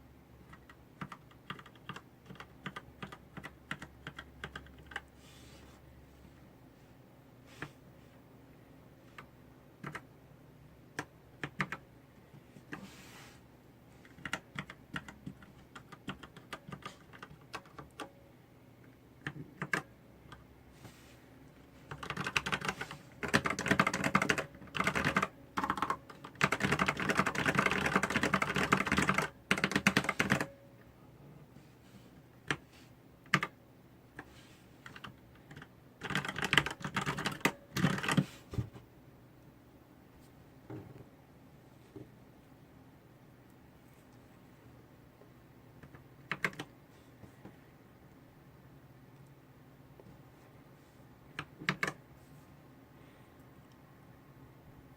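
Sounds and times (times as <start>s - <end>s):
mechanical keyboard typing: 0.5s - 5.1s, 9.2s - 10.1s, 10.9s - 11.8s, 14.0s - 18.1s, 19.2s - 20.4s, 21.9s - 30.6s, 33.3s - 33.6s, 34.2s - 38.2s, 45.8s - 46.7s, 51.3s - 52.0s.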